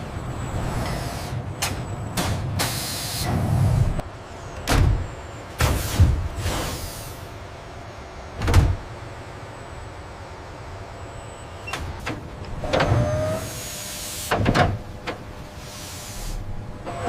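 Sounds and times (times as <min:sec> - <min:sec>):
heavy mechanical clunks: 0:04.6 - 0:06.8, 0:08.4 - 0:09.0, 0:11.7 - 0:13.4, 0:14.2 - 0:15.5
hydraulic hissing bursts: 0:13.4 - 0:14.4, 0:15.6 - 0:16.4.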